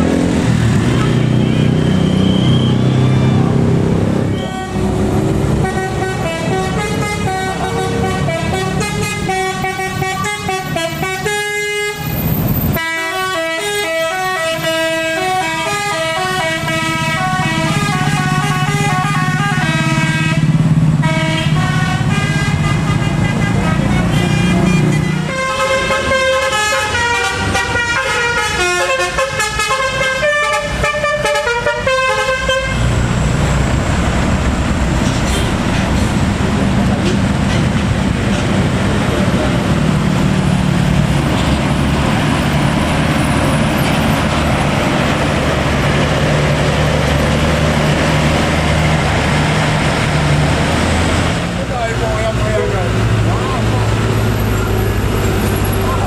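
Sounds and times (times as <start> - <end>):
diesel engine rumbling: 0.0 - 56.0
musical air horn melody: 4.2 - 12.1, 12.8 - 32.9.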